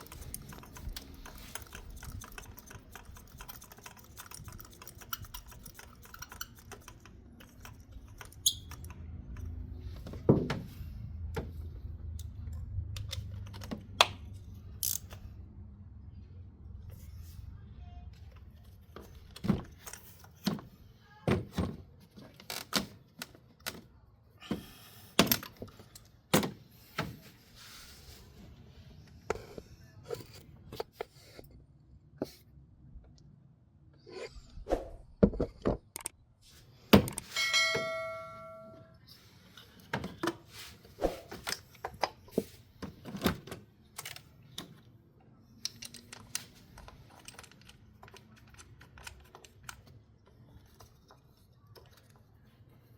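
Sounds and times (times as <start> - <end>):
tools clicking and knocking: 0.0 - 10.6, 11.3 - 15.2, 25.2 - 27.2
ringing metallic clang: 37.3 - 39.0.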